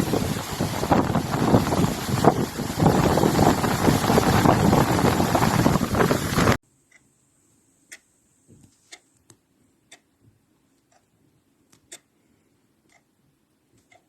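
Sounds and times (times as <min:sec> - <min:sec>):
faint light ticks and clicks: 0:13.7 - 0:14.0.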